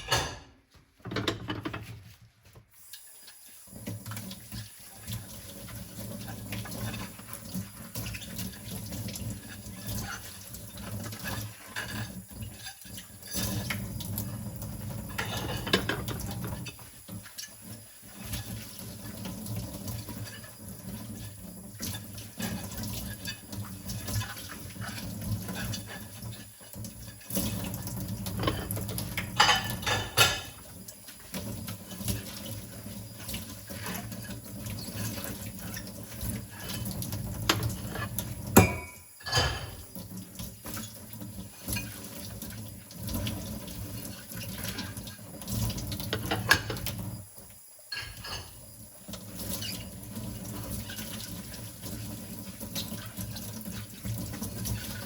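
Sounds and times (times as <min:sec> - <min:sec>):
dishes clinking and knocking: 0:00.0 - 0:02.0, 0:15.1 - 0:16.5, 0:28.3 - 0:30.6, 0:38.5 - 0:39.9, 0:46.1 - 0:46.8, 0:47.9 - 0:48.6
water running from a tap: 0:02.7 - 0:55.0.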